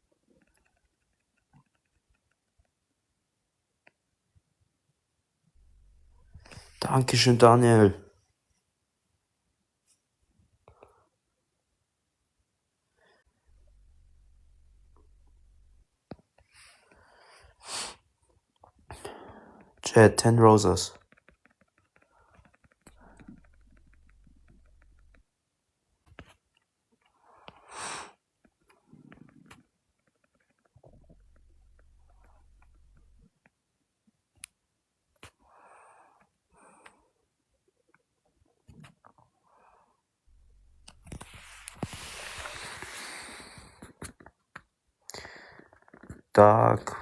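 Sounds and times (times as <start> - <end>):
short breathy rustle: 40.3 - 44.1.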